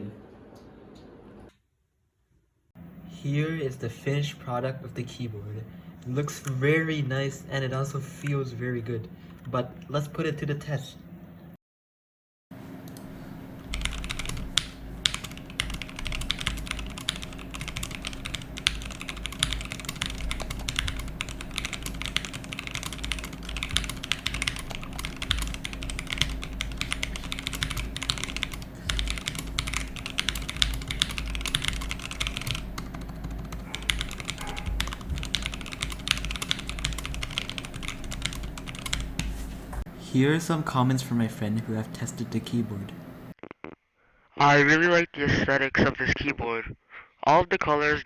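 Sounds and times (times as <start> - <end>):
fast typing on mechanical keyboard: 13.7 - 39.3.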